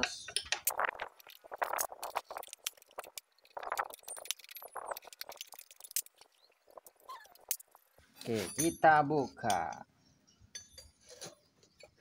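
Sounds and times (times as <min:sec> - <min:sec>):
metal tools clinking: 0:08.3 - 0:12.0.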